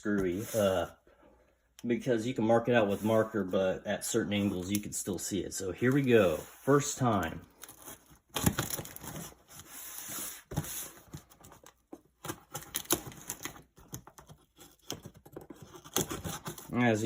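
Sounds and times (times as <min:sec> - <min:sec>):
knife scraping cardboard: 0:14.2 - 0:16.8
knife slitting box tape: 0:14.4 - 0:16.7.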